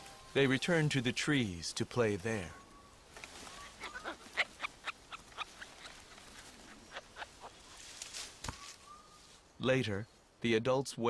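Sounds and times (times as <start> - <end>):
forest background: 0.0 - 11.0
monkey calls and clicks: 3.2 - 7.8.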